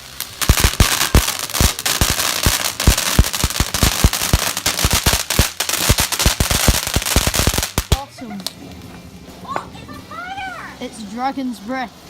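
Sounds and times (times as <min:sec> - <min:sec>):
firework hiss: 0:00.0 - 0:08.1
firework cracks: 0:00.0 - 0:08.9.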